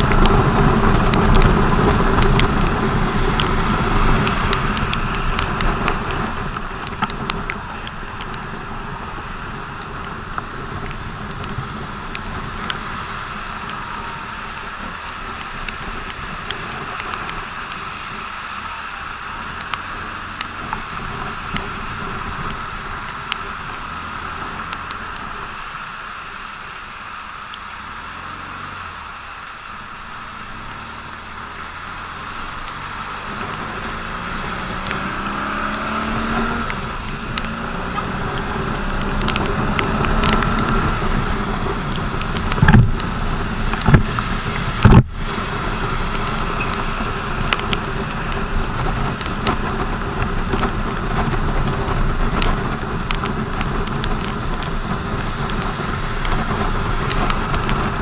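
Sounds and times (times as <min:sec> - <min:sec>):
wind and road noise: 0:00.0 - 0:58.0
motorcycle engine accelerating: 0:27.7 - 0:58.0.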